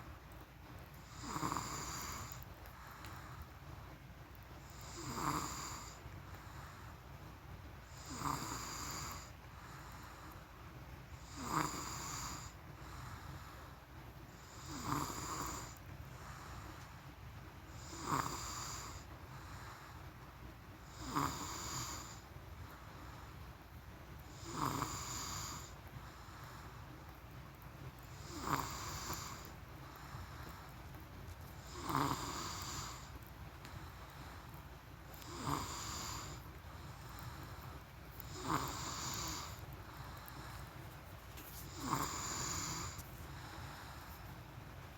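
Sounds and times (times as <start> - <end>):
person snoring: 20.9 - 22.2, 28.2 - 29.5, 31.6 - 33.1, 35.1 - 40.6, 41.4 - 44.2.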